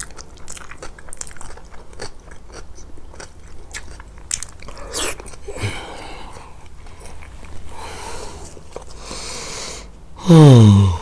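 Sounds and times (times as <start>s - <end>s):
wet chewing of food: 0.0s - 9.1s.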